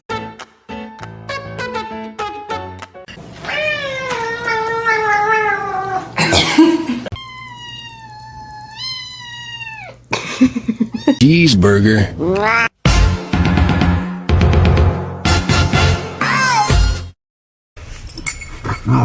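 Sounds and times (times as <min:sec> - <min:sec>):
cat yowling: 0:03.4 - 0:06.1, 0:07.1 - 0:10.0, 0:10.9 - 0:11.2, 0:12.2 - 0:12.8.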